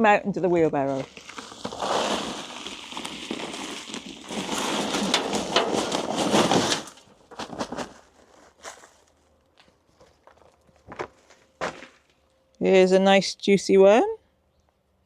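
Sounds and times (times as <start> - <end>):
soil rustling and pattering: 0.0 - 12.2.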